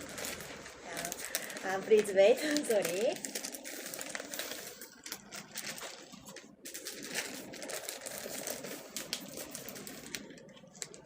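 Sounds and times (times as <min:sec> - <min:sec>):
newspaper pages rustling: 0:00.0 - 0:11.0.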